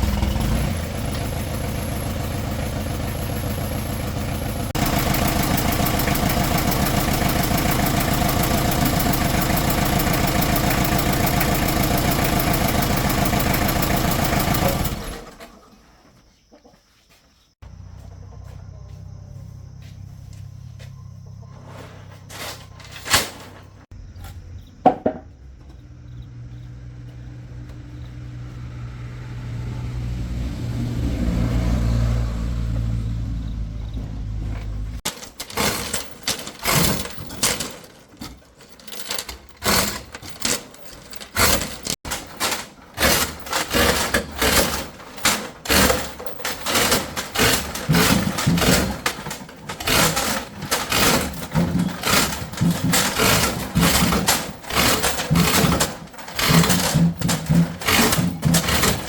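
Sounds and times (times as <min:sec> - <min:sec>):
motor humming: 0:00.0 - 0:15.4
rapid knocks and clatters: 0:00.0 - 0:15.4, 0:34.2 - 0:59.0.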